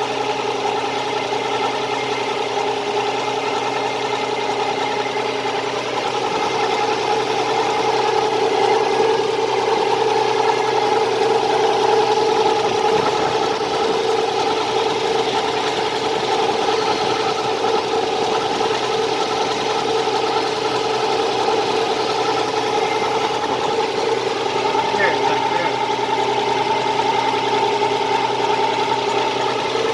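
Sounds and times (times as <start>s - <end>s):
car engine idling: 0.0s - 29.9s
rapid engine ticking: 0.0s - 29.9s
mid-pitched whine: 6.1s - 29.9s.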